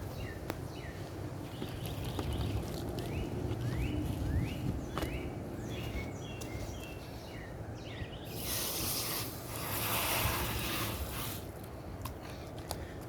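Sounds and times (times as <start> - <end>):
small birds chirping: 0.0 - 9.1.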